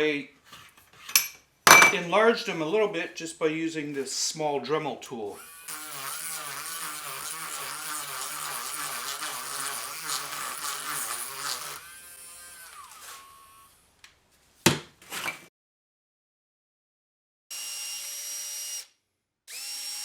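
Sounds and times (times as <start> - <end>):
rotary tool grinding wood: 5.2 - 13.9.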